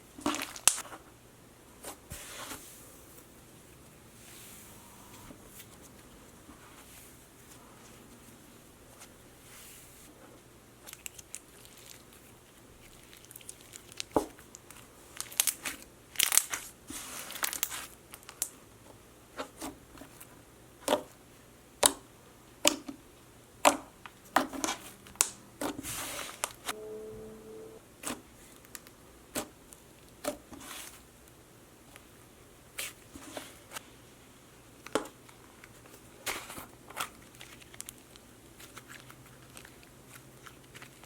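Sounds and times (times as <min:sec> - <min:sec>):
slime popping and crackling: 0:15.2 - 0:16.7.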